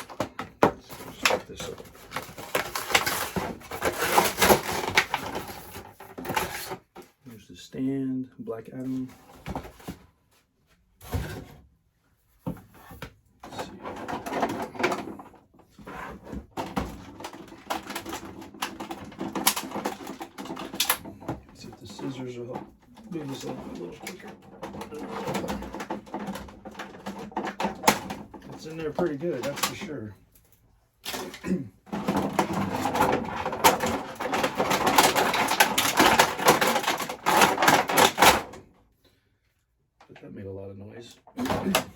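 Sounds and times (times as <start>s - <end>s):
packaging rustling and scraping: 0.0s - 7.1s, 12.7s - 30.1s, 31.0s - 38.6s.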